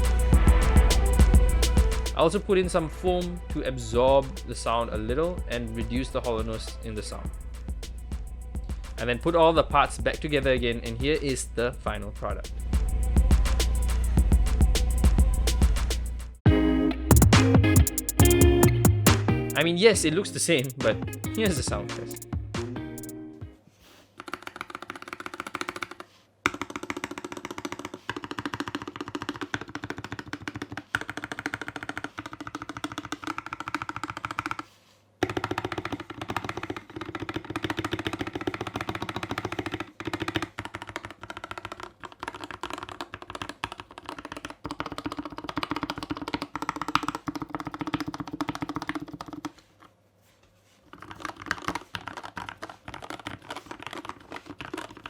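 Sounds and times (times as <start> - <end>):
fast typing on keyboard: 20.5 - 22.2, 24.2 - 49.6, 50.9 - 55.0.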